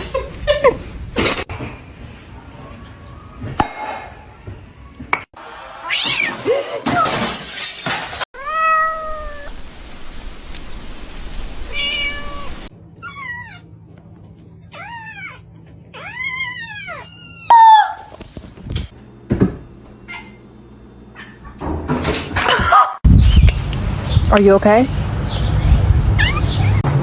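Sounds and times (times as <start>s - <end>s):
cat meowing: 8.4s - 9.5s, 11.7s - 13.7s, 14.7s - 17.9s, 26.2s - 26.8s.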